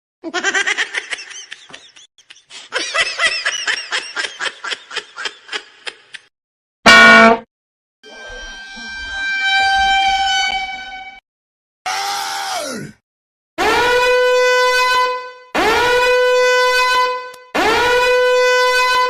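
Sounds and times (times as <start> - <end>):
cartoon-style laugh: 0.2 - 6.3
loud short honk: 6.9 - 7.5, 13.6 - 19.0
steady horn blast: 6.9 - 11.2, 13.6 - 19.0.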